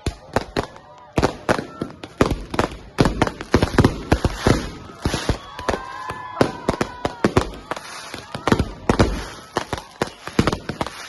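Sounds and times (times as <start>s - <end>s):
firecrackers banging and popping: 0.0s - 11.0s
firework crackling: 0.0s - 11.0s.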